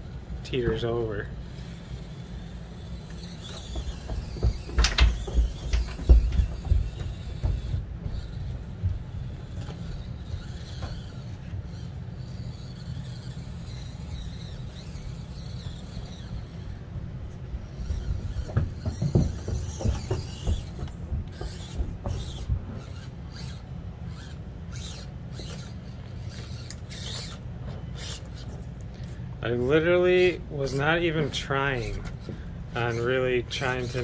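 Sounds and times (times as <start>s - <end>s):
electric motor whirring: 0.0s - 34.0s
tires clicking and knocking: 3.0s - 16.7s, 17.6s - 28.6s.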